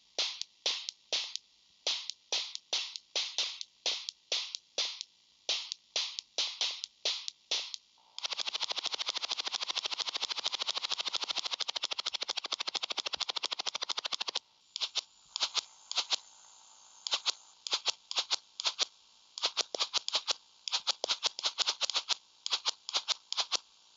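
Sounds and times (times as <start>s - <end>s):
hissy noise bursts shaking pattern: 0.0s - 23.9s
noise pulses helicopter effect: 8.2s - 16.2s.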